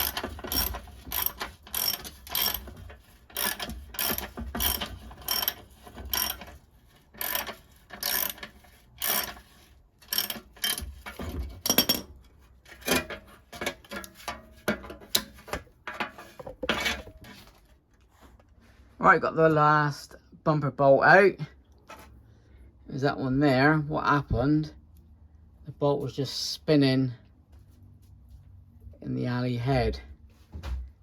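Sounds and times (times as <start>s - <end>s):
ratchet wrench clicking: 0.0s - 2.7s, 3.3s - 6.5s, 7.2s - 10.9s.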